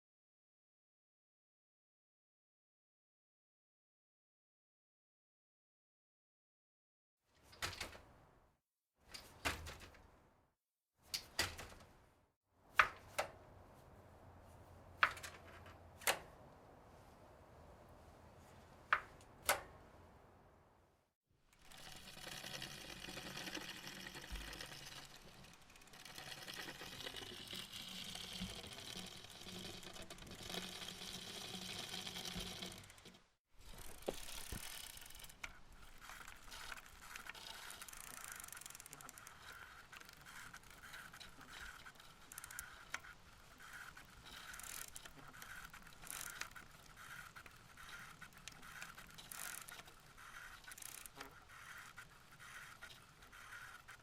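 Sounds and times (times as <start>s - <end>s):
bicycle freewheel ratcheting: 21.5s - 54.0s
regular bicycle click: 21.5s - 54.0s.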